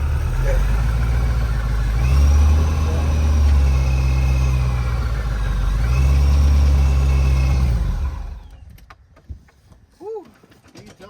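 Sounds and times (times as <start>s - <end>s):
car engine idling and revving: 0.0s - 8.7s.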